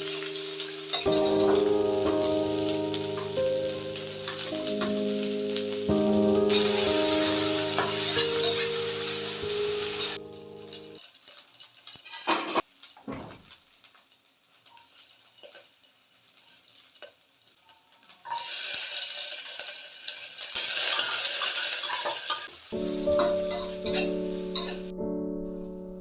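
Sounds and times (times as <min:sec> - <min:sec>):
food sizzling in a pan: 0:00.0 - 0:24.9.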